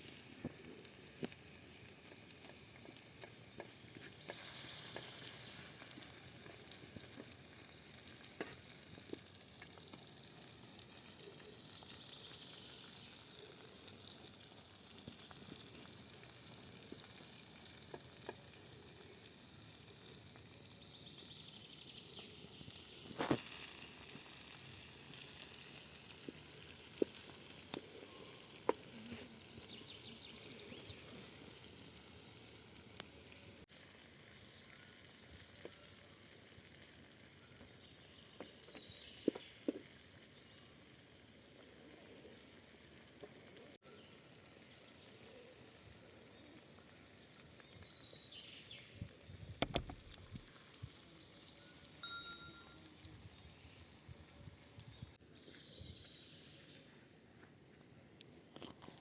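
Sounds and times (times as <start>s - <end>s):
food sizzling in a pan: 0.0s - 55.4s
sharp clicks: 49.6s - 50.1s.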